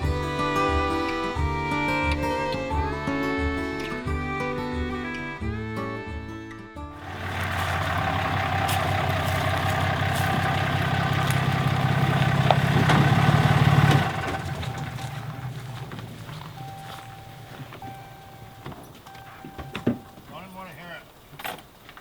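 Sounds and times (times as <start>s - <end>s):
truck engine running: 7.0s - 20.2s.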